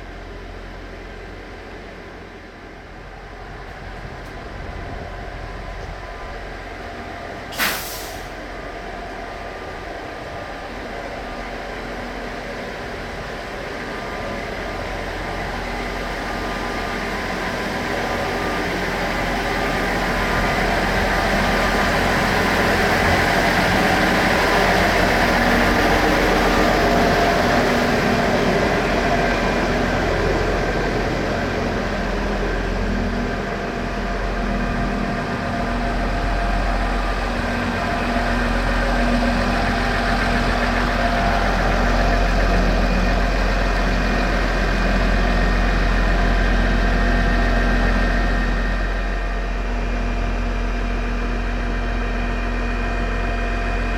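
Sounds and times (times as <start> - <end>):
railcar engine hum: 0.0 - 53.9
train wheel noise: 0.0 - 53.9
sharp hiss of air: 7.5 - 8.4.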